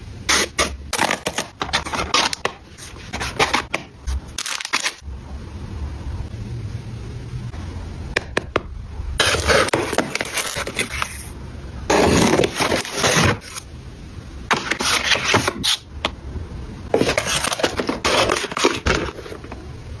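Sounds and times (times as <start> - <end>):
packaging rustling: 1.0 - 5.0, 9.2 - 11.3, 16.9 - 19.6.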